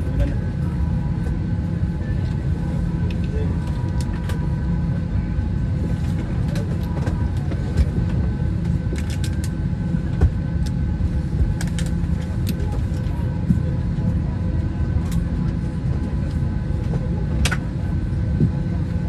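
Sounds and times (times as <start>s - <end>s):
jet engines rumbling and whining: 0.0s - 19.0s.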